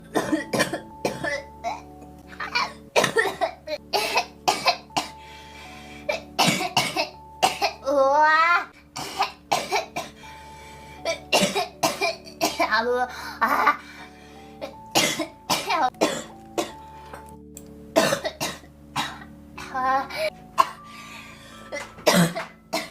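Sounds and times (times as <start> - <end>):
girl coughing: 0.2 - 1.8, 2.4 - 5.1, 6.1 - 7.8, 9.0 - 10.2, 11.1 - 12.8, 14.6 - 16.8, 18.0 - 20.8, 21.8 - 22.9.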